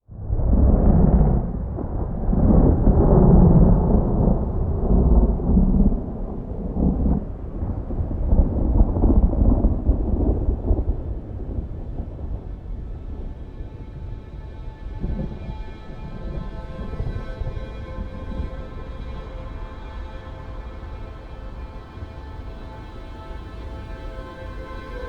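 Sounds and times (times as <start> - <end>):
thunder rumbling: 0.1 - 14.0
soft sustained music notes: 1.0 - 25.0.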